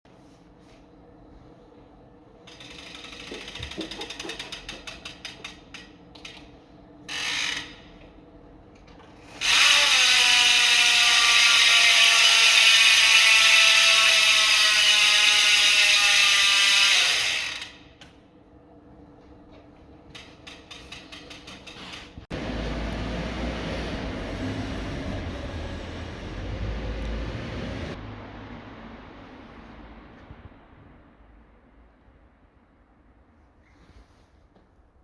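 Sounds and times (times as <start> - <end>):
rapid mechanical clicks: 2.4 - 6.5.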